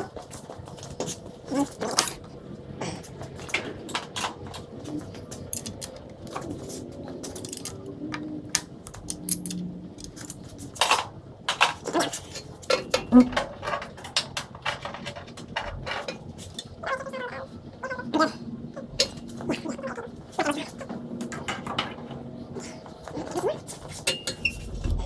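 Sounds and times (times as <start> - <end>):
objects clattering and knocking: 3.4 - 8.3, 8.9 - 16.5, 24.1 - 25.0.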